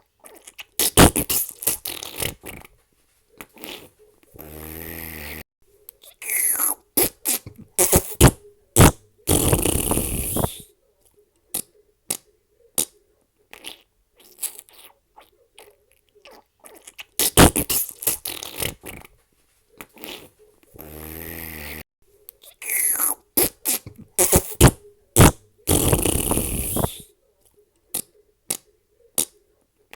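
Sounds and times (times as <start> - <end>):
fart sound effects: 0.8 - 2.7, 3.6 - 5.4, 6.2 - 10.6, 17.2 - 19.1, 20.0 - 21.8, 22.6 - 27.0.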